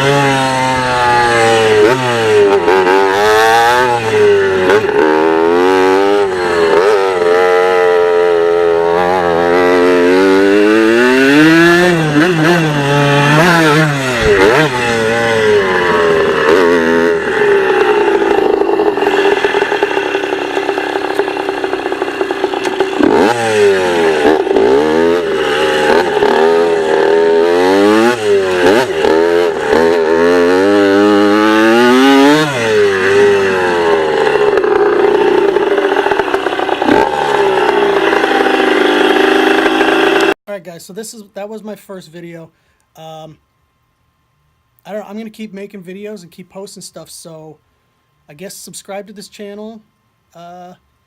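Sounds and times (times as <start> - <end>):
dirt bike engine revving: 0.0 - 40.4.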